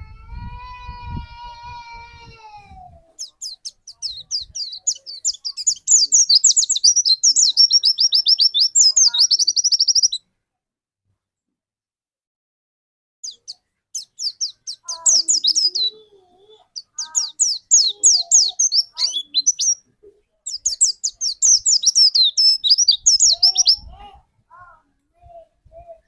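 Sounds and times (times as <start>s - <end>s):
bird rapid high chirps: 3.2s - 10.2s, 13.2s - 16.0s, 16.6s - 19.8s, 20.5s - 24.0s.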